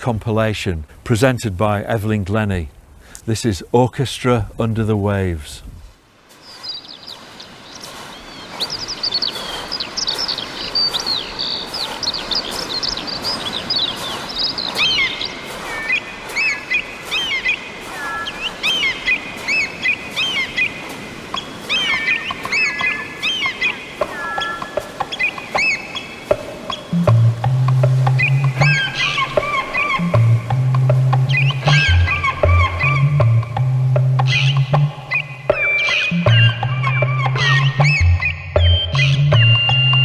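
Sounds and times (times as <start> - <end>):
steady hiss: 0.0 - 32.9
high chirps and whistles: 6.4 - 40.0.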